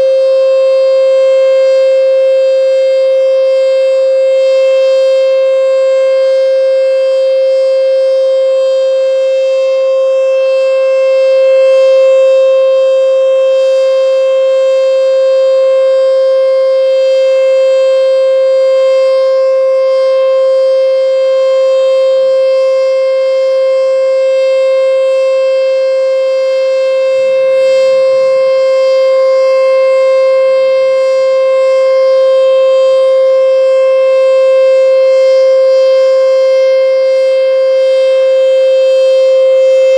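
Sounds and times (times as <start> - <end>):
electronic siren steady tone: 0.0 - 39.9.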